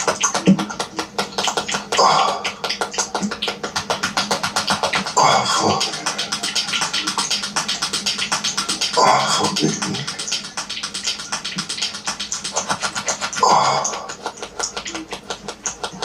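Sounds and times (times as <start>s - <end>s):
fast slapping pulses: 0.0s - 16.0s
vocal burst: 5.0s - 7.3s, 8.6s - 10.9s, 11.5s - 14.4s.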